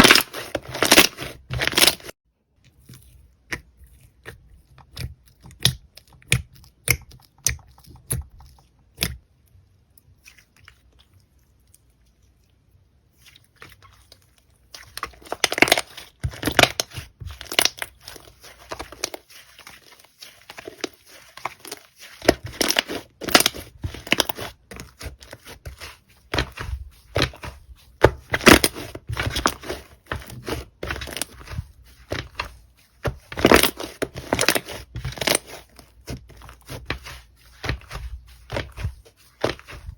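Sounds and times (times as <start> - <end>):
slime crackling and popping: 15.2 - 19.1.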